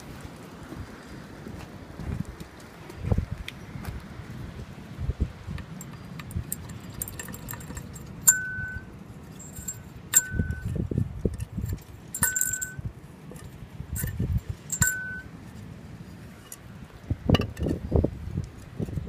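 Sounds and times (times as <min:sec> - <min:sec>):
sharp metallic clinks: 0:05.7 - 0:15.4.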